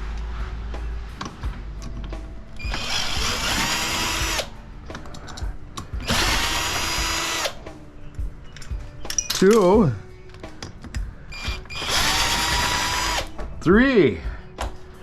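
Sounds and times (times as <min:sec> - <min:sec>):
cordless drill motor spinning: 0:02.6 - 0:04.5, 0:06.0 - 0:07.6, 0:11.4 - 0:13.3
handling clicks and knocks: 0:08.1 - 0:11.1.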